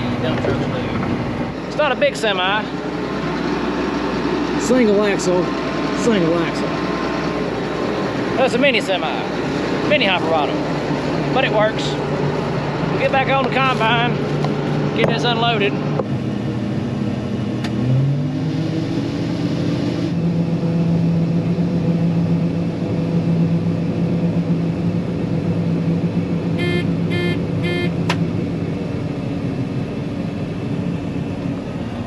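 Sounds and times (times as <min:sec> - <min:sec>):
diesel engine revving: 0:00.0 - 0:32.0
short electronic beeps: 0:26.6 - 0:27.9.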